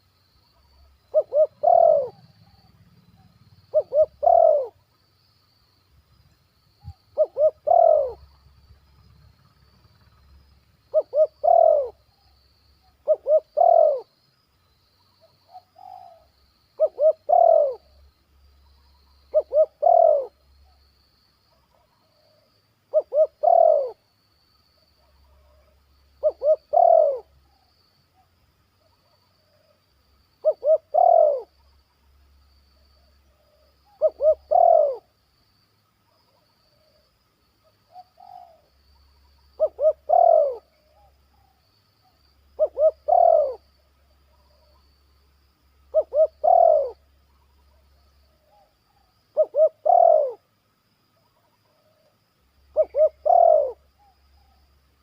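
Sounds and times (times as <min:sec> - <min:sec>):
dove cooing: 0:00.8 - 0:04.8, 0:06.8 - 0:08.4, 0:10.9 - 0:14.1, 0:15.5 - 0:18.0, 0:19.3 - 0:20.8, 0:21.7 - 0:24.0, 0:25.0 - 0:27.7, 0:30.4 - 0:31.5, 0:33.2 - 0:35.1, 0:37.9 - 0:38.7, 0:39.6 - 0:44.8, 0:45.9 - 0:50.5, 0:52.7 - 0:54.6.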